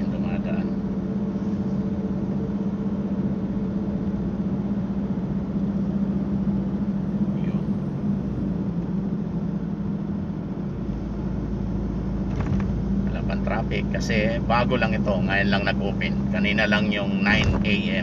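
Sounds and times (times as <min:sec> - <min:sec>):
car engine and road drone: 0:00.0 - 0:18.0.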